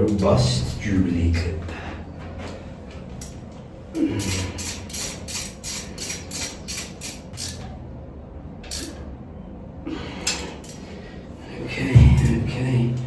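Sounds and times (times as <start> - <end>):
ratchet wrench clicking: 4.2 - 7.7, 8.7 - 9.0.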